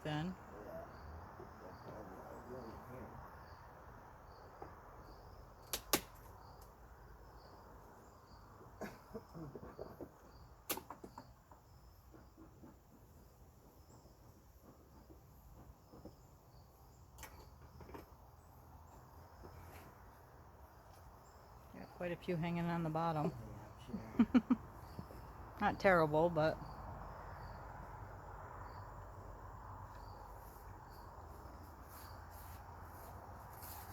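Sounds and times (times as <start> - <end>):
crickets chirping: 0.0 - 33.9
wooden clicks of beehive frames: 9.7 - 11.7, 17.1 - 18.3.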